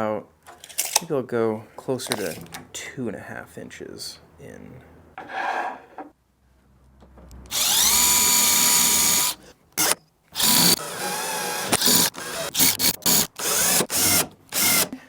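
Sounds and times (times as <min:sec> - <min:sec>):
power drill whining: 0:07.5 - 0:14.9.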